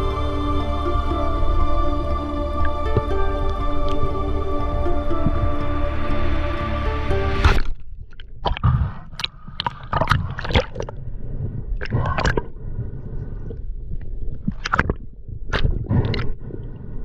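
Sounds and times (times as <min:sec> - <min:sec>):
low underwater rumble: 0:00.0 - 0:17.0
water gurgling and sloshing: 0:00.0 - 0:17.0.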